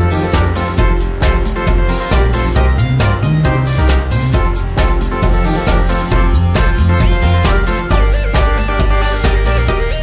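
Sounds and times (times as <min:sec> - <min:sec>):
steady drum beat: 0:00.0 - 0:09.2
sustained keyboard chords: 0:00.0 - 0:09.9.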